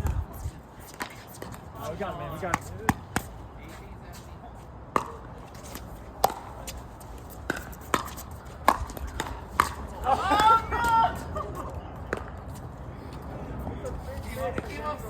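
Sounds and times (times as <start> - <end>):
wind rumbling on microphone: 0.0 - 0.9
player shouting: 10.0 - 11.4.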